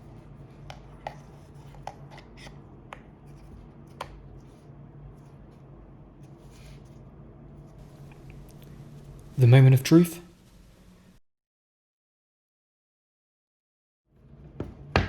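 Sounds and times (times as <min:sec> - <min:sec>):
steady low hum: 0:02.6 - 0:11.2.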